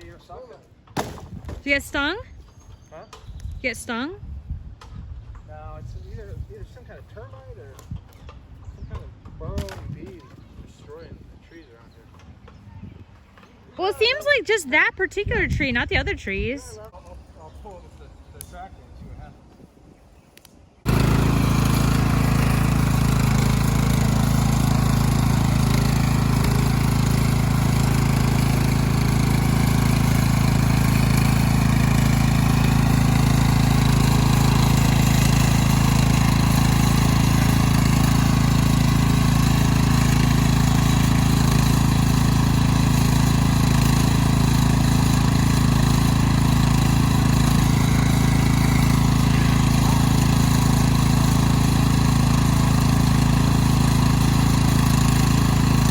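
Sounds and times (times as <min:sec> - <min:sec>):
tractor engine running: 0:20.9 - 0:55.9.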